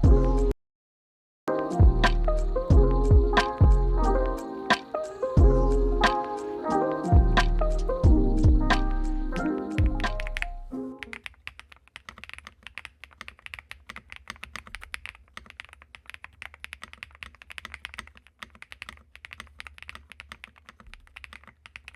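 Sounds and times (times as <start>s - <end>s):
music: 0.0s - 0.5s, 1.5s - 11.1s
mechanical keyboard typing: 9.7s - 21.9s.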